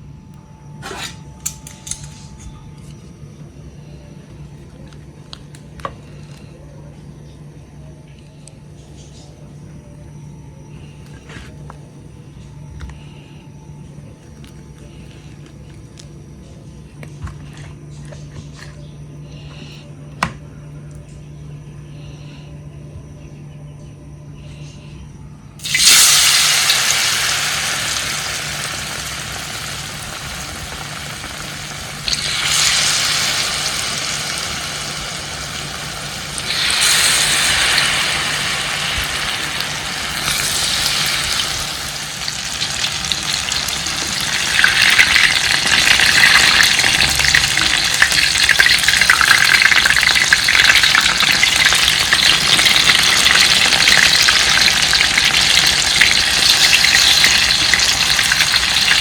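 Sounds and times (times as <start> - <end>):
frying in hot oil sizzling: 25.6 - 59.0.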